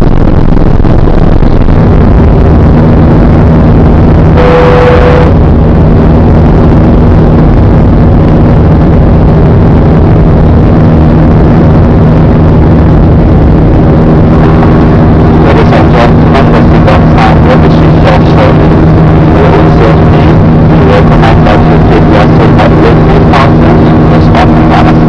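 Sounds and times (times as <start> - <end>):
jet engines roaring: 12.1 - 25.0.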